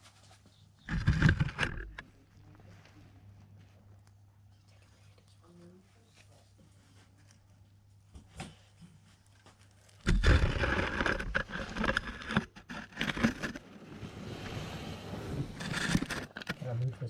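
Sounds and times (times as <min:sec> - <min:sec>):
loud rustling and scraping: 0:00.0 - 0:02.0, 0:09.0 - 0:16.9.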